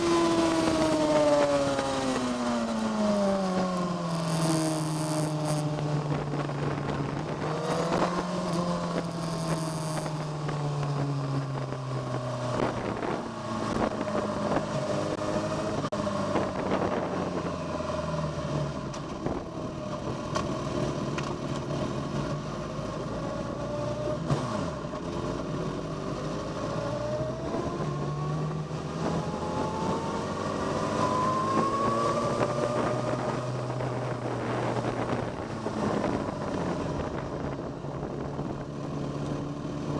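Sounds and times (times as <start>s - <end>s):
race car engine revving: 0.0s - 22.3s, 22.9s - 39.9s
wind buffeting microphone: 5.7s - 18.0s, 26.8s - 39.2s.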